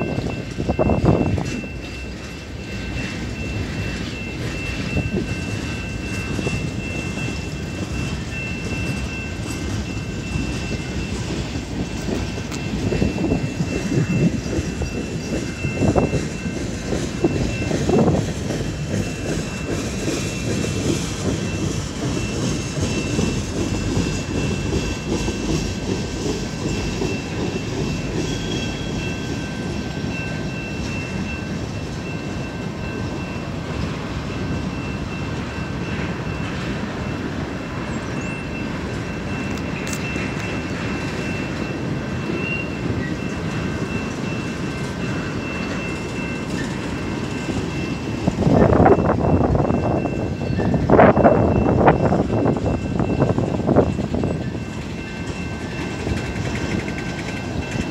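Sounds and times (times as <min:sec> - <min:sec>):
freight train rumbling past: 0:00.0 - 0:57.9
wheels clattering over rails: 0:37.8 - 0:57.9.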